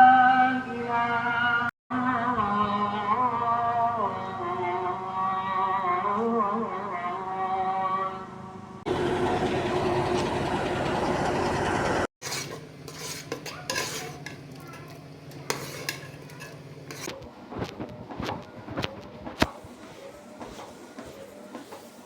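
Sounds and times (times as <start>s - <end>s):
utensils clinking on pots: 12.2s - 17.1s.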